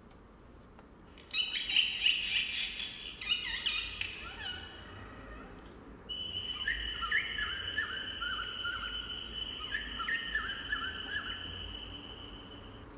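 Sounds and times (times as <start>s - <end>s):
short bird chirps: 6.1s - 12.8s
high insect trill: 6.1s - 12.9s.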